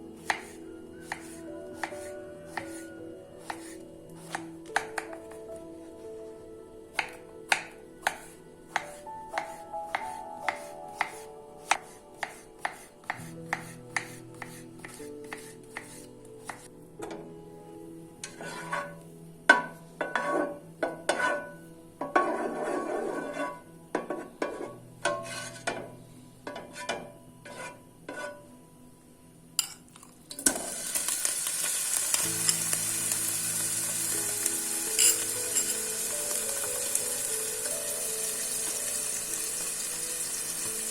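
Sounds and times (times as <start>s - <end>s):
soft background music: 0.0s - 40.9s
steady hiss: 30.6s - 40.9s
utensil clinking against cookware: 35.0s - 36.0s.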